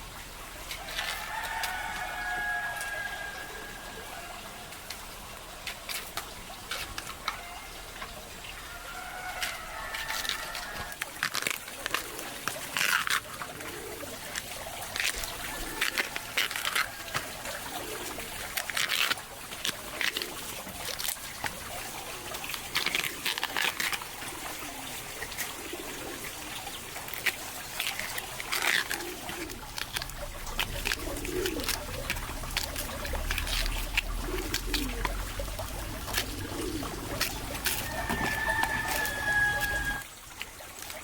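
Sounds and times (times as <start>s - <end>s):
water trickling: 0.0s - 41.0s
chickens clucking low: 28.9s - 40.1s.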